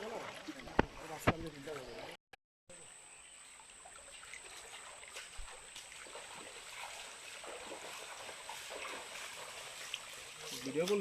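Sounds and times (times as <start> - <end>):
waterfall and stream rushing: 3.8 - 11.0.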